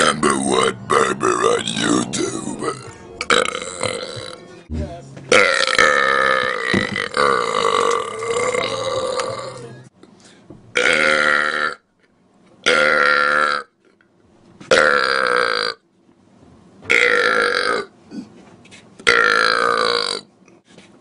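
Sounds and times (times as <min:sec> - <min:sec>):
man belching: 0:00.0 - 0:04.4, 0:05.3 - 0:09.6, 0:10.7 - 0:11.8, 0:12.6 - 0:13.7, 0:14.7 - 0:15.8, 0:16.9 - 0:17.9, 0:19.0 - 0:20.3.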